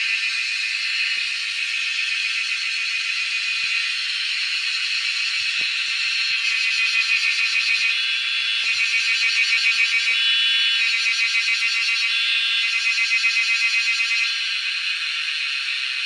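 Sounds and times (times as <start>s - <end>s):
cicadas droning: 0.0s - 16.0s.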